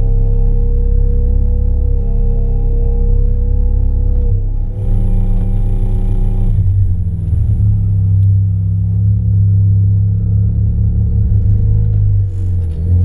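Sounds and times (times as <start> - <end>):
rotary engine idling: 4.7 - 13.0.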